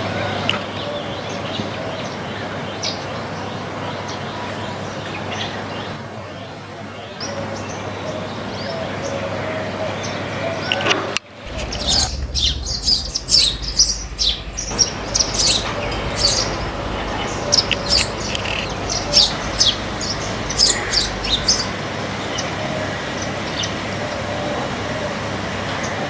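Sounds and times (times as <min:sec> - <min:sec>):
small birds chirping: 0:11.5 - 0:21.8.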